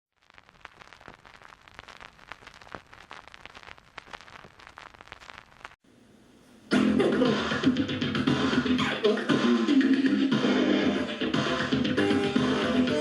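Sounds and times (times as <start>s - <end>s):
vinyl record crackle: 0.1s - 5.8s, 10.0s - 13.0s
rap music with heavy bass: 6.7s - 13.0s.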